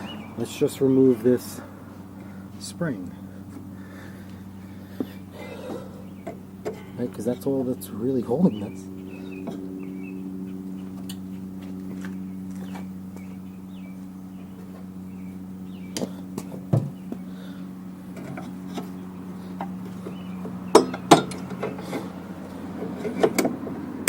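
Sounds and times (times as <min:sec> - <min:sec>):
low background hum: 0:00.0 - 0:24.0.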